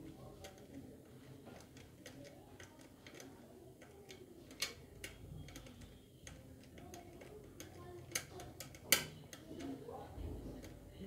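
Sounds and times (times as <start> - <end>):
screwdriver clicking on metal: 1.6 - 9.7.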